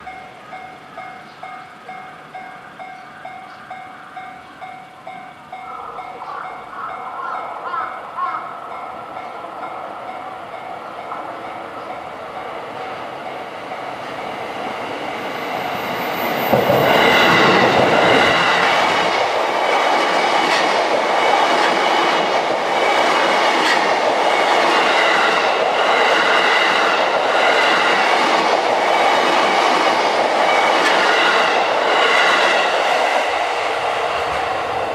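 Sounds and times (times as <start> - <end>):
electric train passing: 0.0 - 34.9
wheels clacking over rail joints: 7.7 - 34.9.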